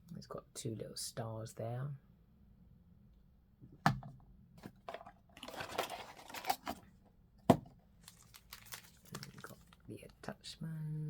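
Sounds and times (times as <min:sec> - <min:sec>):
plastic packaging crinkling: 0:04.9 - 0:06.8, 0:08.0 - 0:09.9.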